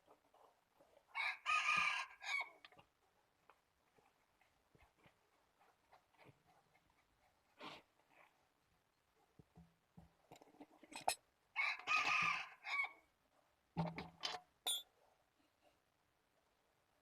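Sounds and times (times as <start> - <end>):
rooster crowing: 1.1 - 2.5, 11.6 - 13.0.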